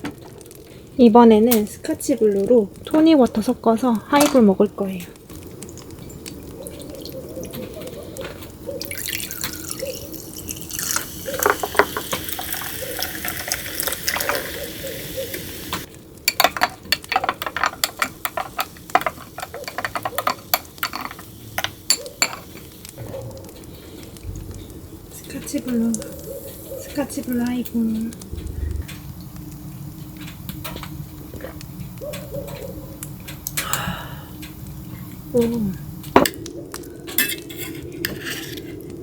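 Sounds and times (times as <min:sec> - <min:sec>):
tonic fizzing in a glass: 0:05.2 - 0:08.0, 0:08.7 - 0:28.4
liquid pouring into a glass: 0:08.8 - 0:16.8.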